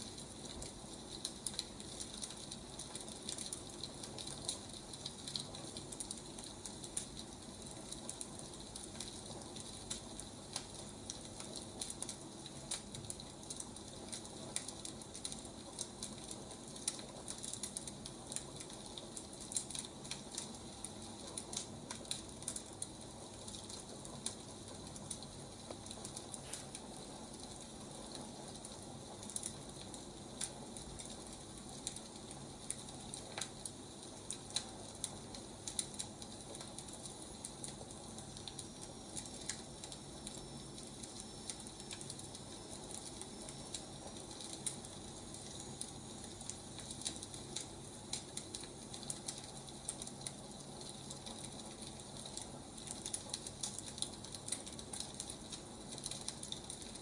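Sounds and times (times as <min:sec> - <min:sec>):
firewood crackling and popping: 0:00.0 - 0:57.0
soft hiss: 0:25.5 - 0:27.9.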